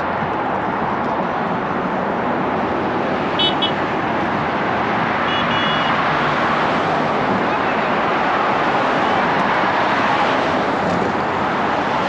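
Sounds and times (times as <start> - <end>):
road traffic rushing: 0.0 - 12.0
high-pitched horn beeps: 5.3 - 5.9.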